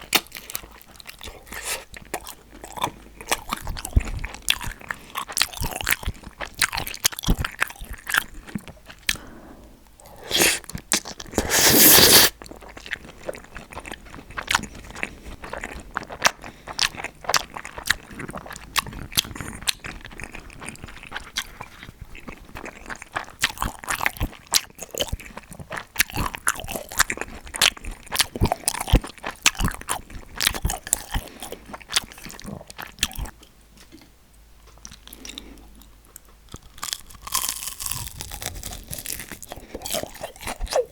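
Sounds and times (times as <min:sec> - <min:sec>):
crunching bites and chewing: 0:00.0 - 0:09.2, 0:10.0 - 0:40.9
wet mouth clicks: 0:10.2 - 0:12.3.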